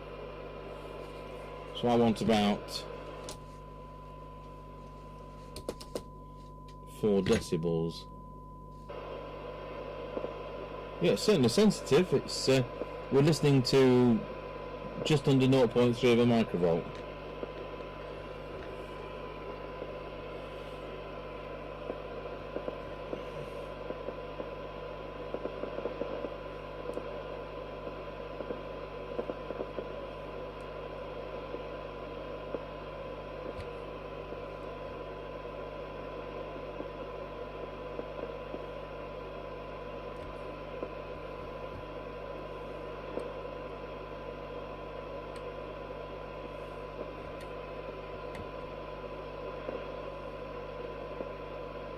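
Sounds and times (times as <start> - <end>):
radio hiss: 0.0 - 8.1, 8.8 - 51.9
steady test tone: 0.0 - 44.0
low hum: 0.0 - 51.9.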